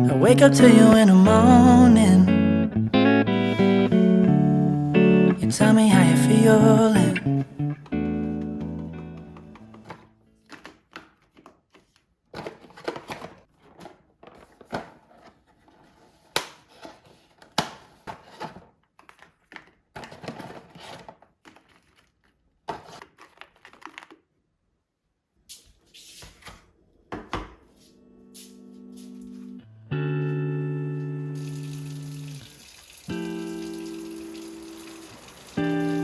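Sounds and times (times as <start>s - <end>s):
music: 0.0s - 10.0s, 27.9s - 32.5s, 33.1s - 36.0s.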